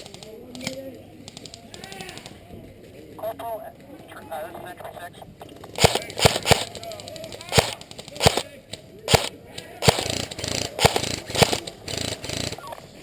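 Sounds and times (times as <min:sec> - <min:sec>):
airsoft gun shots: 0:05.8 - 0:08.5, 0:09.1 - 0:12.6.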